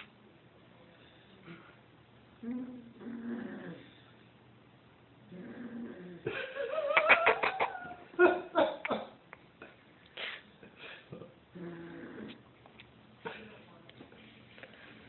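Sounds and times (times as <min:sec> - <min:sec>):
puppy snoring softly: 0:02.4 - 0:04.0, 0:05.3 - 0:06.2, 0:11.6 - 0:12.4.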